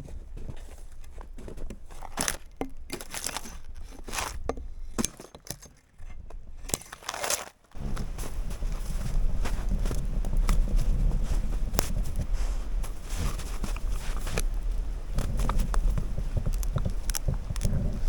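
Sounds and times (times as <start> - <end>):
crinkling and rustling: 0.0 - 18.0
steady low rumble: 7.8 - 18.0.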